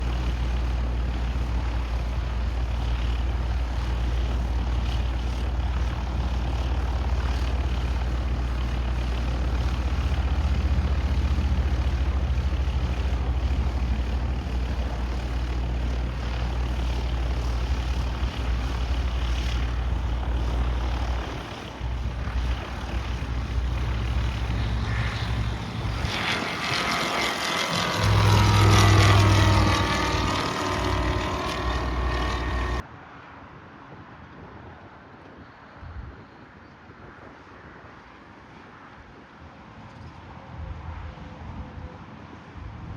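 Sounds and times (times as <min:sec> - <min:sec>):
propeller aircraft engine droning: 0:00.0 - 0:32.9.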